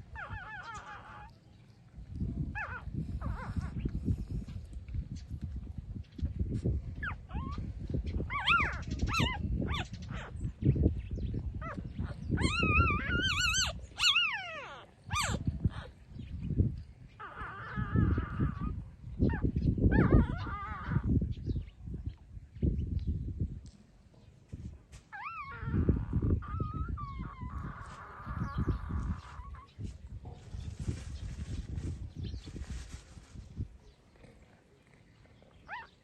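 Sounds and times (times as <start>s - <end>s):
puppies whimpering and squealing: 0.0s - 1.4s, 2.6s - 4.0s, 7.0s - 10.5s, 11.6s - 16.0s, 17.2s - 21.2s, 25.1s - 29.8s, 35.6s - 36.0s.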